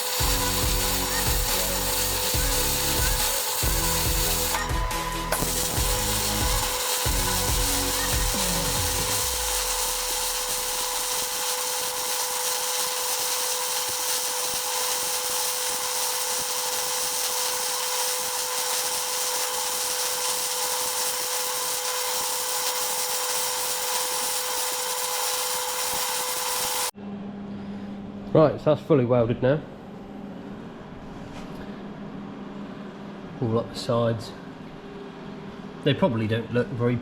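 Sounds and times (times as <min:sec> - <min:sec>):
welder sizzling hiss: 0:00.0 - 0:26.9
welder hum: 0:00.0 - 0:27.0.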